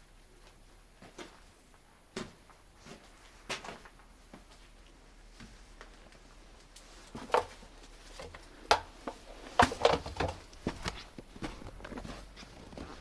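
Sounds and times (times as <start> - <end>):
footsteps crunching in snow: 10.6 - 13.0.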